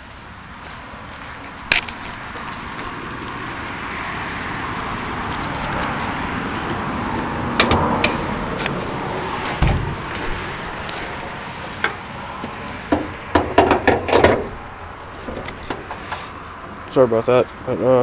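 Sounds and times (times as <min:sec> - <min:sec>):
steady background noise: 0:00.0 - 0:18.0
car hood clicks and knocks: 0:07.6 - 0:08.2, 0:09.6 - 0:10.4, 0:12.9 - 0:14.6
dull thump: 0:09.6 - 0:10.4.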